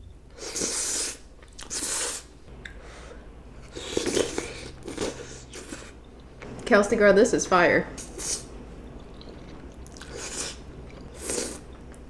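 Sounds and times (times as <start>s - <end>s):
person slurping noodles: 0.4s - 2.3s, 3.7s - 5.9s, 10.0s - 10.6s
chewing noodles: 3.6s - 6.4s, 8.0s - 12.0s.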